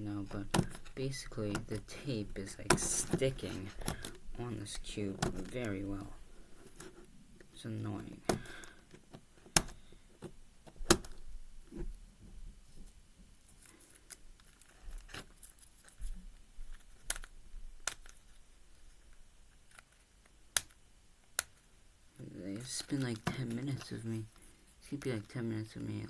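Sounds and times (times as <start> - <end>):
sharp plastic clicks: 0.2 - 6.1, 6.8 - 11.2, 16.7 - 18.3, 19.6 - 21.7.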